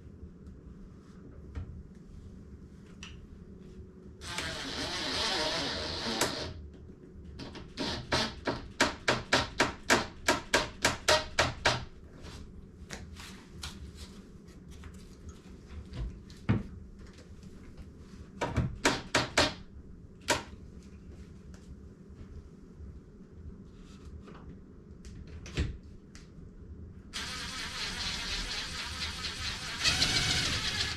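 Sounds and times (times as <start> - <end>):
screw driving clicks: 27.2 - 30.9.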